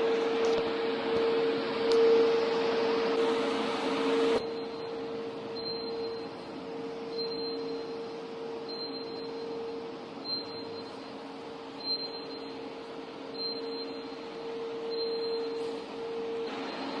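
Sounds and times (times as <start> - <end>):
faint high-pitched machine cycle: 0.0 - 17.0
machinery hum: 0.0 - 17.0.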